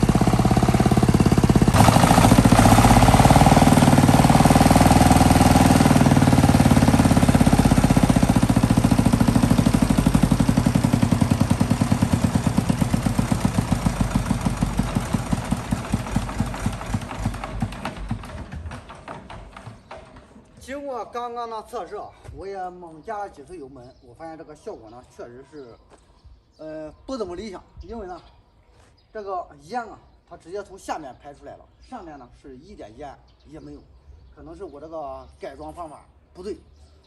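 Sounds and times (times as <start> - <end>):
tractor diesel engine: 0.0 - 20.1.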